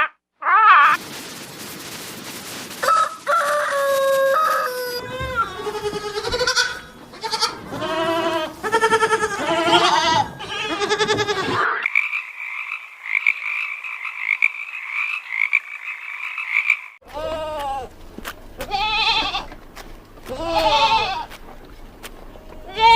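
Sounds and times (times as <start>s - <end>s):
rooster crowing: 2.8s - 6.0s
goat bleating: 4.7s - 11.7s, 17.0s - 19.6s, 20.2s - 21.4s, 22.4s - 22.9s
frogs croaking: 11.6s - 17.0s.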